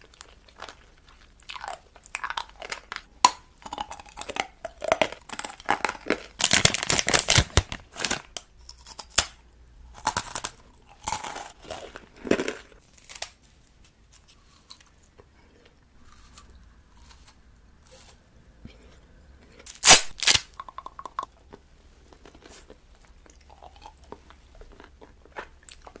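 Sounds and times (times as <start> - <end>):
crunchy bites and chewing: 0.0 - 13.4, 19.6 - 21.2
tearing crinkly noises: 4.9 - 9.4, 19.6 - 20.6.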